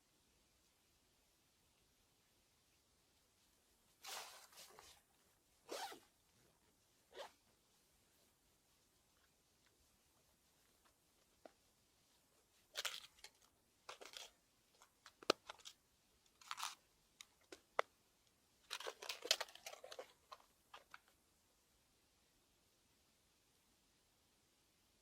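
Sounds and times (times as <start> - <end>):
rustling and crunching handling: 8.3 - 17.9, 18.6 - 21.2.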